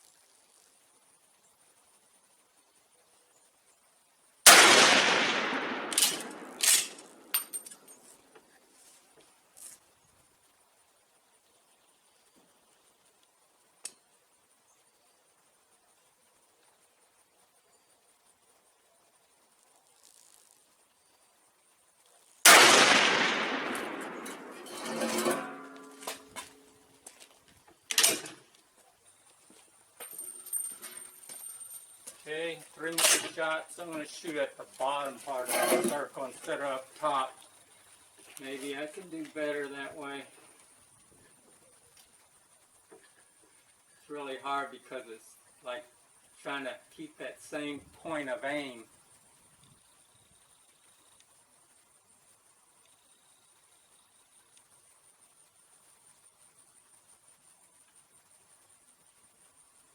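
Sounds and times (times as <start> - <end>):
rifle shot with echo: 4.5 - 7.5, 22.5 - 26.4
loud sharp bolt clack: 4.5 - 7.9
rifle bolt metal clicks: 5.9 - 7.9
metallic clacks: 5.9 - 8.1, 23.2 - 26.7
ringing metal clink: 5.9 - 8.1, 24.1 - 26.7, 30.0 - 32.1
faint ticks: 12.3 - 14.2, 40.3 - 44.0, 48.9 - 59.9.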